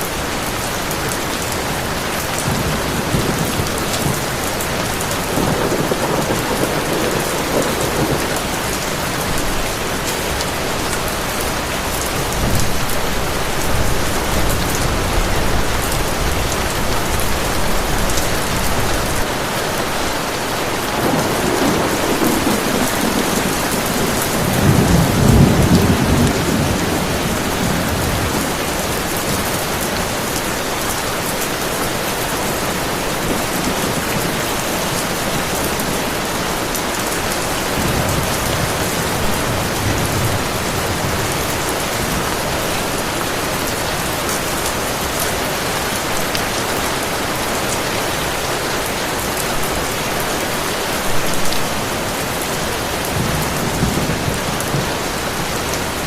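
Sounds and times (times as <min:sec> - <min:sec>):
heavy rain pouring: 0:00.0 - 0:56.0
rolling thunder: 0:01.3 - 0:19.3, 0:20.7 - 0:31.1, 0:32.5 - 0:44.1, 0:52.7 - 0:56.0.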